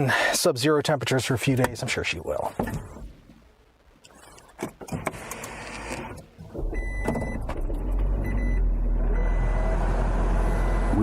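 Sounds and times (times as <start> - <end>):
short electronic beeps: 8.2 - 9.7.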